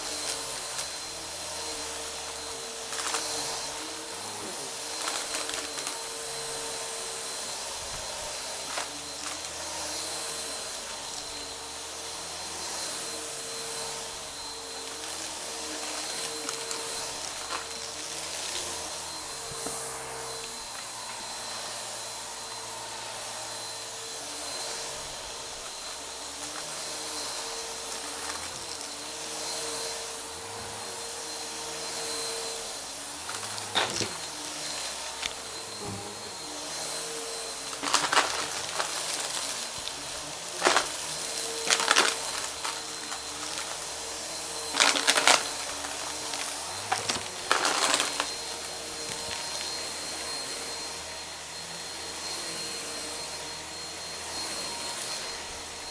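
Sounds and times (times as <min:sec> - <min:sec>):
debris crackling in hose: 0:00.0 - 0:06.7, 0:07.7 - 0:21.2, 0:25.2 - 0:30.4, 0:32.0 - 0:49.9
vacuum cleaner running: 0:00.0 - 0:55.9.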